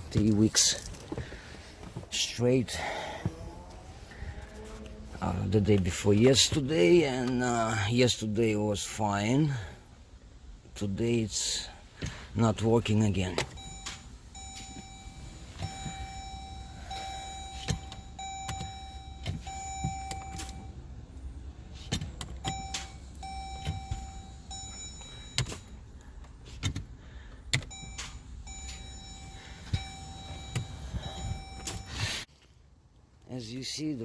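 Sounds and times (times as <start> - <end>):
electronic warning tone: 13.6 - 20.8, 27.7 - 32.2.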